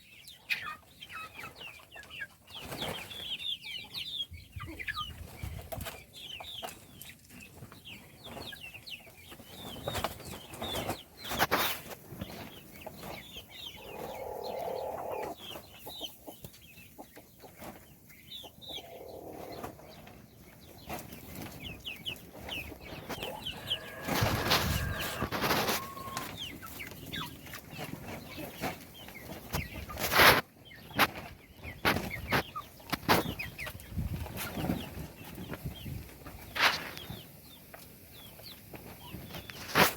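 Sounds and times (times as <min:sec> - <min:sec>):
baby chicks peeping: 0:00.0 - 0:39.9
rustling: 0:23.0 - 0:27.3.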